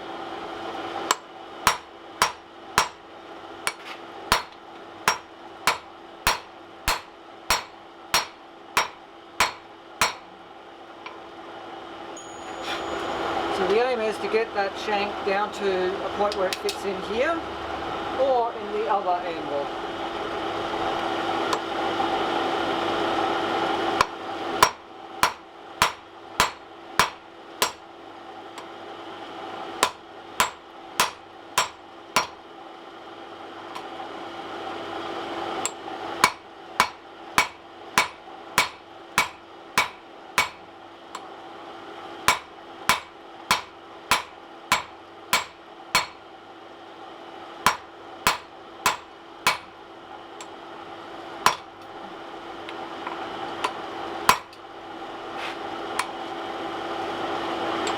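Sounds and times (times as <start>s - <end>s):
steady hum: 0.0s - 57.9s
hammer striking steel on anvil: 1.1s - 3.0s, 3.7s - 10.3s, 24.0s - 27.8s, 29.8s - 32.4s, 35.6s - 41.3s, 42.3s - 46.2s, 47.6s - 49.7s, 51.4s - 52.0s, 53.6s - 54.6s.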